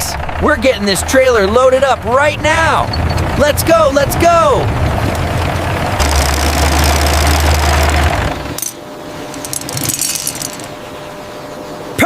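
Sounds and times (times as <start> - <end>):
vehicle engine rumbling: 0.0 - 12.0
clinking and rattling: 6.0 - 10.8.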